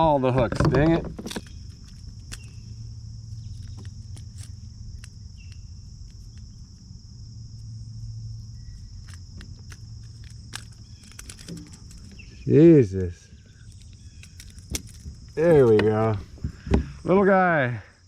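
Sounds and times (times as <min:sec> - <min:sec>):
insects chirring: 0:00.0 - 0:18.0.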